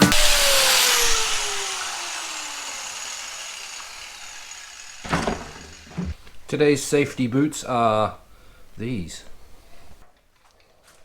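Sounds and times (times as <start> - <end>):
angle grinder spinning down: 0.0 - 6.2.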